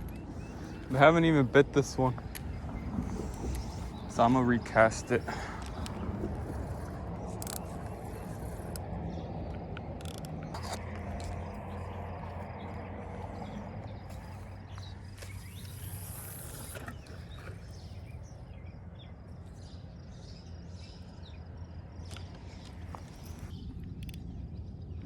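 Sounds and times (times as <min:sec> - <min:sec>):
fishing reel whirring and clicking: 0:00.0 - 0:11.9, 0:14.2 - 0:17.9
low hum: 0:00.0 - 0:25.0.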